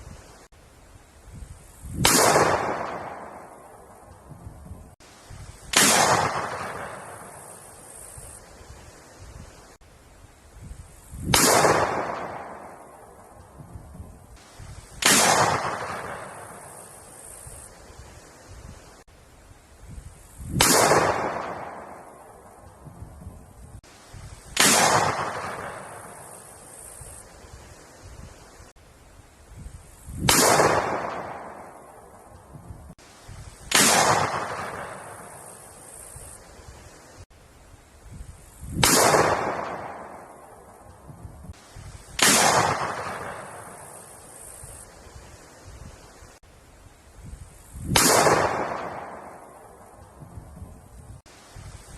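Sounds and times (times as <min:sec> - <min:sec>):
gunshots echoing: 0:02.0 - 0:03.6, 0:05.7 - 0:07.6, 0:11.3 - 0:13.0, 0:15.0 - 0:16.8, 0:20.6 - 0:22.2, 0:24.6 - 0:26.4, 0:30.2 - 0:31.9, 0:33.7 - 0:35.5, 0:38.8 - 0:40.4, 0:42.2 - 0:44.0, 0:48.0 - 0:49.6.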